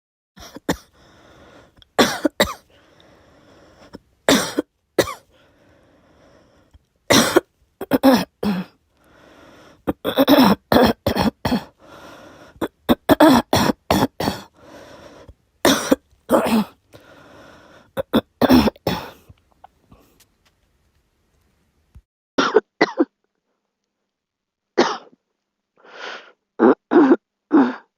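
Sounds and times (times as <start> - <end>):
girl coughing: 2.0 - 2.7, 4.3 - 5.3, 7.1 - 8.7, 9.9 - 11.7, 15.7 - 16.8, 18.0 - 19.2, 22.4 - 23.1, 24.8 - 25.2, 26.6 - 27.9.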